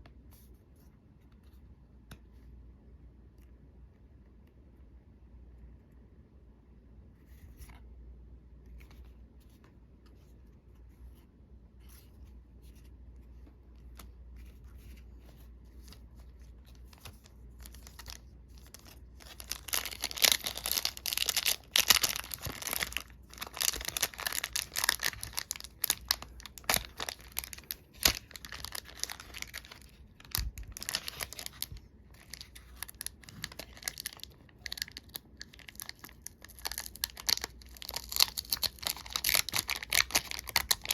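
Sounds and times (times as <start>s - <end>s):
foil wrappers crinkling: 16.9s - 40.9s.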